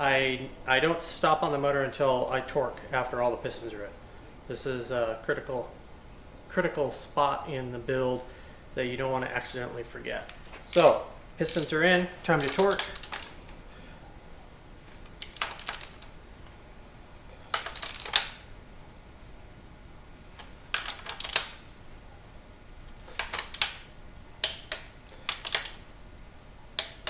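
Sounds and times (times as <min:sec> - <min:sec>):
torque wrench ratcheting and clicking: 0:10.3 - 0:11.8, 0:12.4 - 0:13.3, 0:15.2 - 0:16.1, 0:17.5 - 0:18.3, 0:20.7 - 0:21.5, 0:24.4 - 0:25.8.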